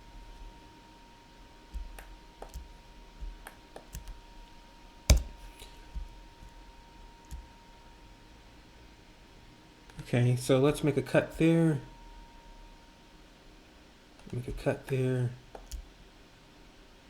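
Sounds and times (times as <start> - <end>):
keyboard and mouse clicks: 1.8 - 4.2, 15.6 - 15.8
faint high whine: 4.3 - 17.0.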